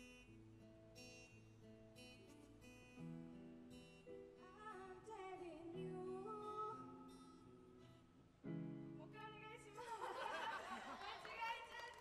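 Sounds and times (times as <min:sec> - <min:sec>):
acoustic guitar chords: 0:00.0 - 0:09.8
woman singing: 0:04.4 - 0:07.4.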